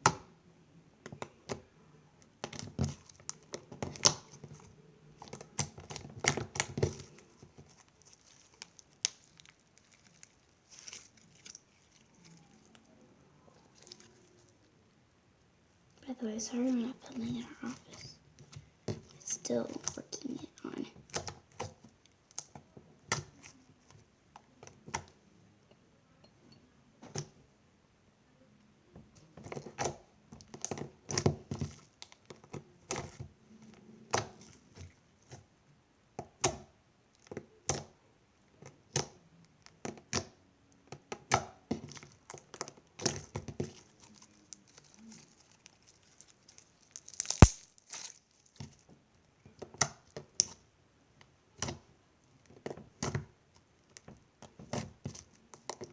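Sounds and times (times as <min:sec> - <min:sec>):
sharp snap: 0:47.2 - 0:47.7.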